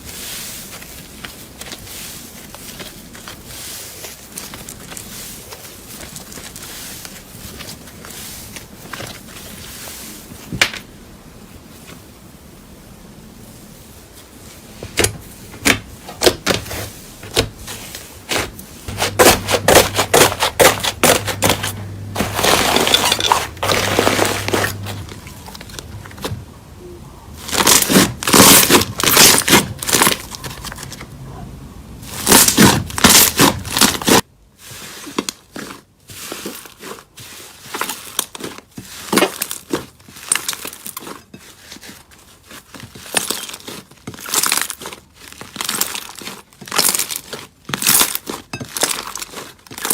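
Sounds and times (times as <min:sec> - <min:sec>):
hands squishing slime: 0:00.0 - 0:10.6, 0:32.1 - 0:49.9
slime crackling and popping: 0:27.4 - 0:30.5, 0:42.6 - 0:49.9.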